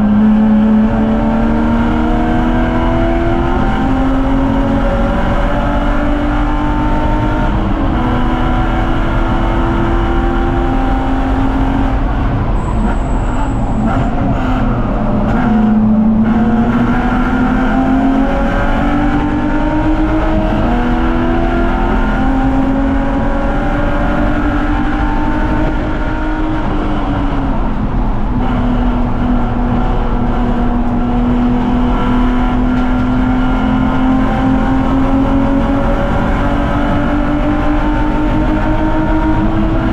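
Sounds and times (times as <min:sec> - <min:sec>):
race car engine revving: 0:00.0 - 0:39.9.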